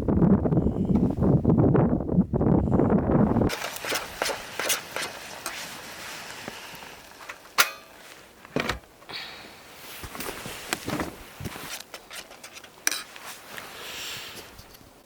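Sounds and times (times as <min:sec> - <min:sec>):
camping gear knocks and clicks: 0:03.5 - 0:09.0, 0:10.0 - 0:13.3
sharp metallic clink: 0:07.6 - 0:08.1.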